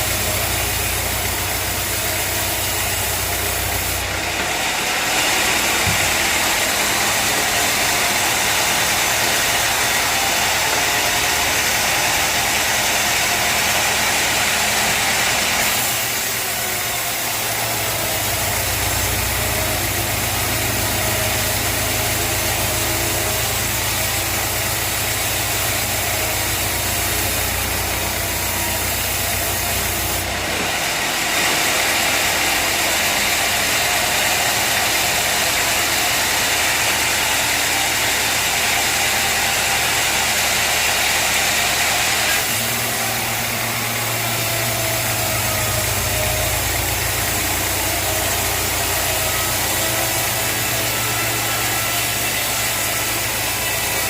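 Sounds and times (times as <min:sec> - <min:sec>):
sawmill engine running: 0:00.0 - 0:54.0.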